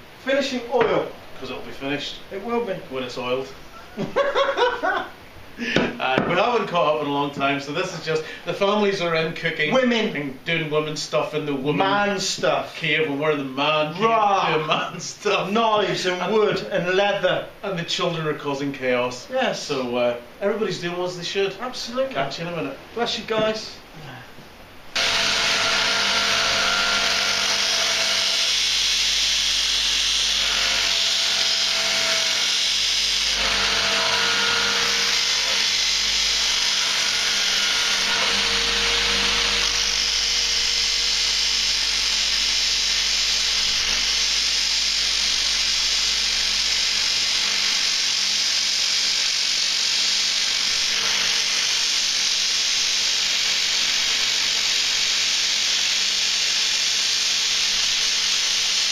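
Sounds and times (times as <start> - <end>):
power tool motor whine: 25.0 - 58.9.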